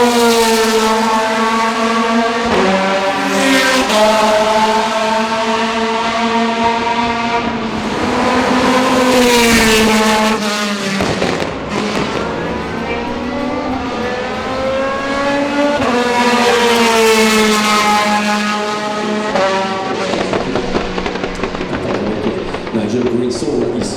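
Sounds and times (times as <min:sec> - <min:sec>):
race car engine revving: 0:00.0 - 0:23.9
gear change: 0:00.4 - 0:23.9
exhaust crackles and pops: 0:07.5 - 0:16.3, 0:17.0 - 0:23.9.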